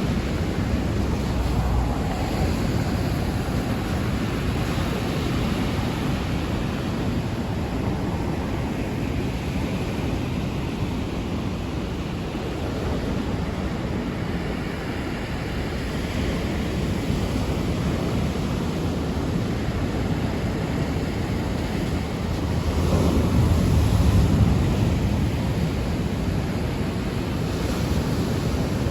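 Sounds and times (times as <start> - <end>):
rain and wind rushing: 0.0 - 5.4.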